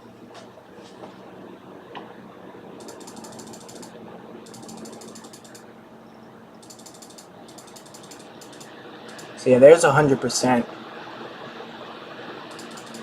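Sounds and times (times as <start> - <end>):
computer fans rushing air: 0.0 - 13.0
rapid fine clicking: 2.8 - 5.6, 6.6 - 9.4, 12.4 - 13.0.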